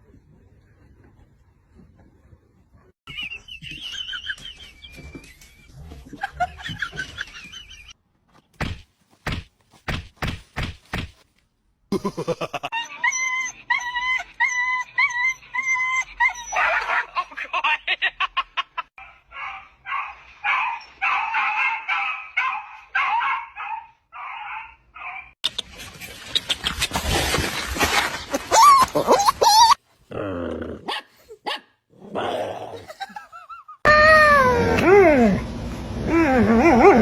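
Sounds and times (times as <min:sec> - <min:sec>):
dog whining: 0:12.7 - 0:16.8, 0:36.0 - 0:37.0
dog yelping and barking: 0:12.7 - 0:17.2, 0:19.0 - 0:25.4, 0:28.4 - 0:29.8.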